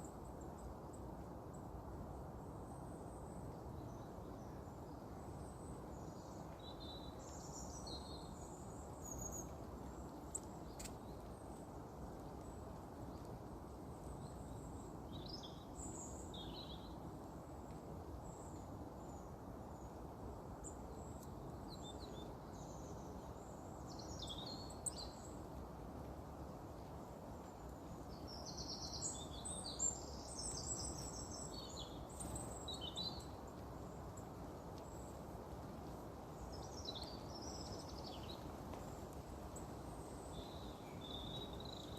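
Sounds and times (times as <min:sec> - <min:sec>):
low background noise: 0:00.0 - 0:41.9
small birds chirping: 0:05.2 - 0:11.7, 0:20.6 - 0:25.4, 0:27.3 - 0:41.9.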